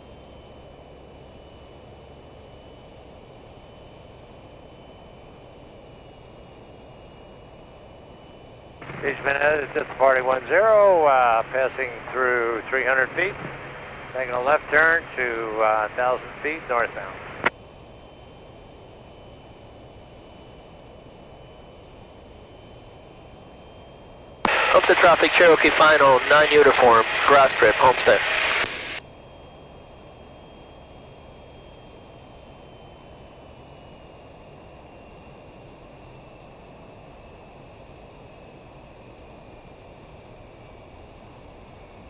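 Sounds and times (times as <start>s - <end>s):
faint electrical whine: 0.0s - 42.0s
propeller aircraft cabin drone: 0.0s - 42.0s
aircraft piston engine drone: 8.8s - 17.5s, 24.5s - 29.0s.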